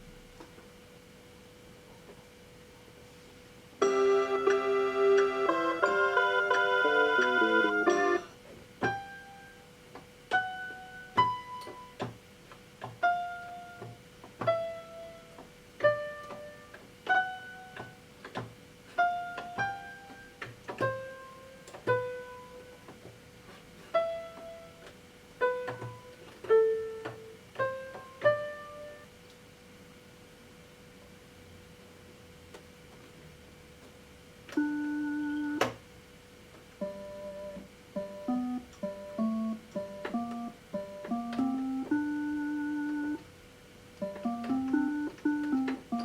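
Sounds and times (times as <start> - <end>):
electronic keyboard piano notes: 3.8 - 12.2, 12.8 - 23.0, 23.9 - 29.1, 34.5 - 35.8, 36.8 - 46.0.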